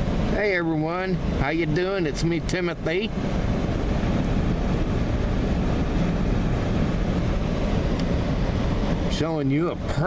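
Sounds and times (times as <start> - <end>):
low rumbling noise: 0.0 - 10.0.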